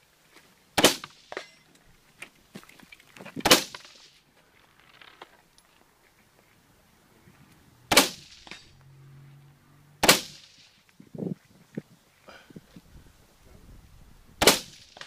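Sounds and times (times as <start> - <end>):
rifle shots with echo: 0.8 - 1.3, 7.9 - 8.5, 10.0 - 10.7, 14.4 - 15.0.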